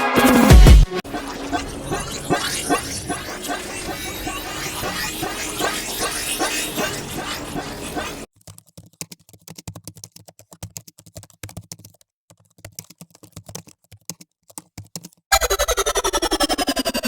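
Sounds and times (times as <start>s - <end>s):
music: 0.0s - 2.0s.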